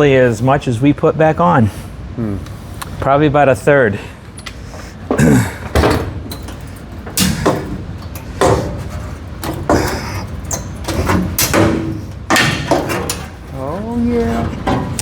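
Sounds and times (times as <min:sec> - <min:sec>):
metal clunks and knocks: 0:05.1 - 0:15.0.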